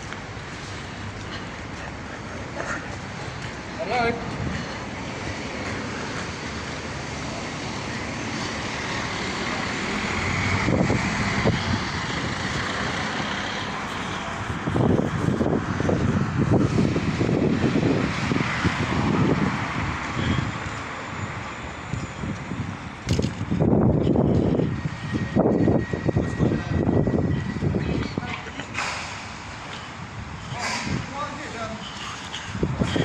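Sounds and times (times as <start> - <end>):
demolition machinery engine running: 6.0 - 31.0.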